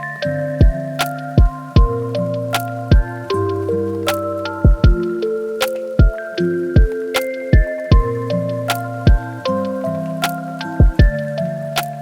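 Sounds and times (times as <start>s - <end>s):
crisp beat clicks: 0.0s - 12.0s
held keyboard chords: 0.0s - 12.0s
soft kick drum thumps: 1.4s - 2.0s, 2.9s - 3.1s, 4.6s - 5.0s, 7.6s - 8.1s, 9.1s - 9.3s, 10.8s - 11.2s.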